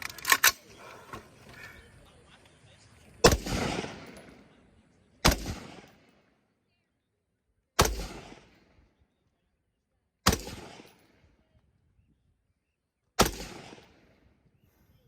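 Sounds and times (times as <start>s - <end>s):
gunshots with echo: 3.2s - 4.5s, 5.2s - 6.1s, 7.8s - 8.6s, 10.2s - 11.0s, 13.2s - 14.0s.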